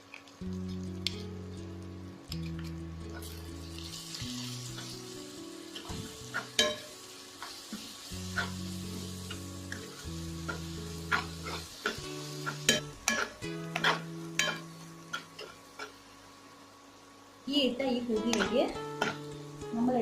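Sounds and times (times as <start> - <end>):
soft background music: 0.0 - 16.7, 17.4 - 20.0
shallots sizzling in a pan: 0.0 - 20.0
spoon clicking and scraping pan: 5.8 - 8.6, 9.7 - 16.0, 18.3 - 19.3.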